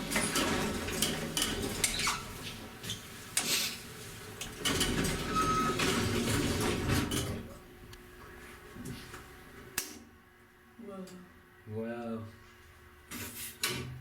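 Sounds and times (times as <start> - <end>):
elevator clattering and rumbling: 0.0 - 7.9
elevator squeak: 1.8 - 3.1, 4.6 - 7.4.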